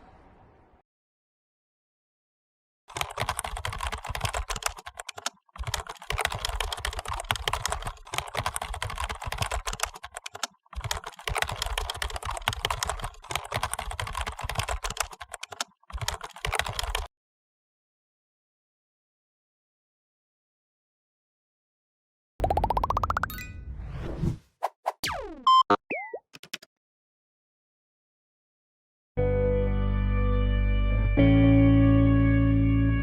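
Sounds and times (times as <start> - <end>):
rapid keyboard typing: 2.9 - 17.1.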